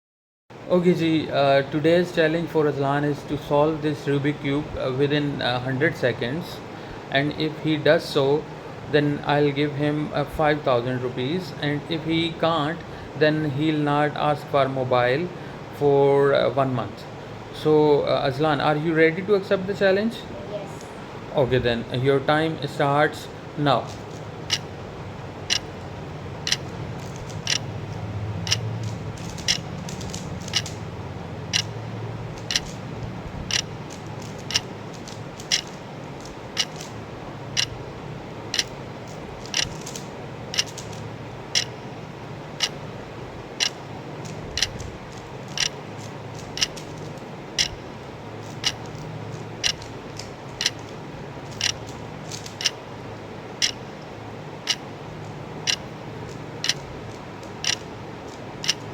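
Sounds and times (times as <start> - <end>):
low background hum: 0.5 - 58.9
clock ticking: 24.5 - 24.7, 25.5 - 25.7, 26.4 - 27.7, 28.4 - 28.7, 29.3 - 30.8, 31.5 - 31.8, 32.4 - 32.8, 33.5 - 33.7, 34.4 - 34.7, 35.4 - 35.7, 36.6 - 36.8, 37.6 - 37.8, 38.5 - 38.7, 39.5 - 39.8, 40.6 - 40.8, 42.6 - 42.8, 43.6 - 43.8, 44.6 - 44.8, 45.6 - 45.8, 46.6 - 46.8, 47.6 - 47.8, 48.6 - 48.9, 49.6 - 49.9, 50.6 - 50.9, 51.5 - 51.9, 53.6 - 53.8, 54.6 - 54.8, 55.7 - 55.9, 56.6 - 56.9, 57.6 - 57.9, 58.6 - 58.9.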